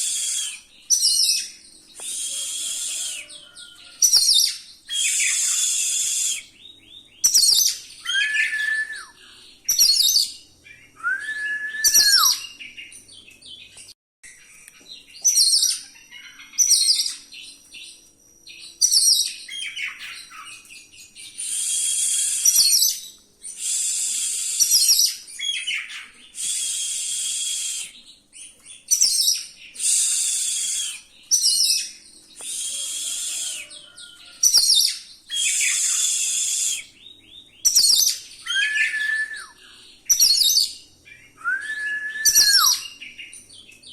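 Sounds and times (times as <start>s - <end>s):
long falling whistles: 0.0s - 0.7s, 2.0s - 3.6s, 4.9s - 6.6s, 8.0s - 9.2s, 11.0s - 12.5s, 21.4s - 22.8s, 23.6s - 25.0s, 26.4s - 28.0s, 29.8s - 31.1s, 32.4s - 33.9s, 35.3s - 37.0s, 38.4s - 39.6s, 41.4s - 42.9s
songbird singing rolling song: 0.0s - 43.9s.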